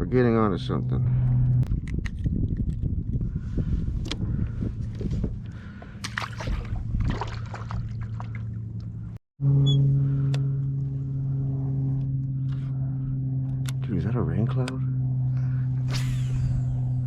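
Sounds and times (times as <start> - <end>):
low hum: 0.0 - 17.0
water splashing: 6.0 - 8.6.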